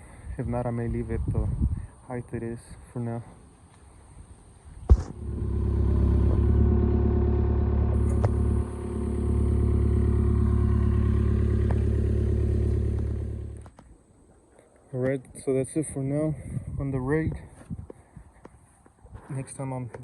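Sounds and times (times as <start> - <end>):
motor running steadily: 4.9 - 13.7.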